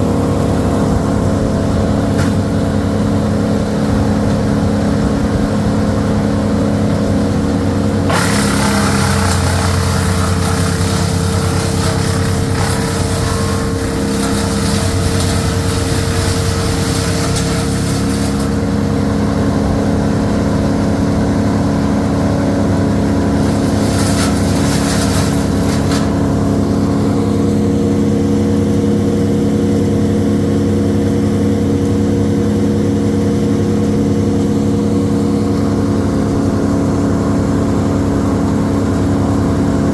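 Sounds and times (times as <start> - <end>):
engine running steadily: 0.0 - 39.9
harsh rushing noise: 8.0 - 21.0, 22.9 - 28.0.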